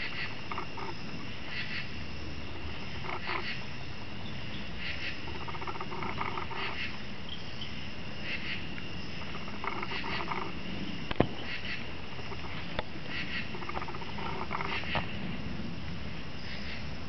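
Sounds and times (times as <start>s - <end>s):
insects trilling: 0.0s - 17.0s.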